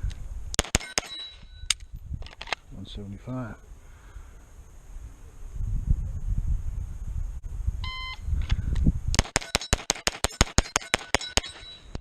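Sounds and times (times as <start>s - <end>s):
rapid pistol shots: 0.6s - 1.3s, 9.2s - 11.7s.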